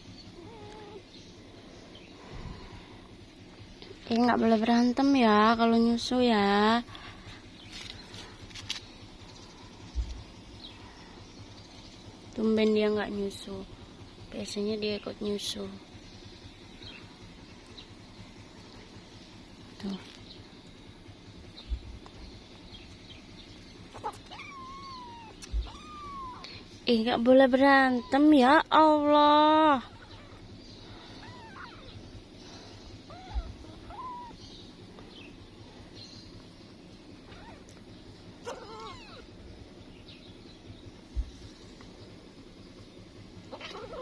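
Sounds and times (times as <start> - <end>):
faint low hum: 0.0 - 44.0
soft low thumps: 21.5 - 23.7, 24.4 - 26.4, 32.9 - 35.6, 40.6 - 42.1
kitten mewing: 23.8 - 26.7, 29.8 - 32.0, 33.0 - 34.6, 37.2 - 37.8, 38.4 - 39.4, 43.5 - 44.0.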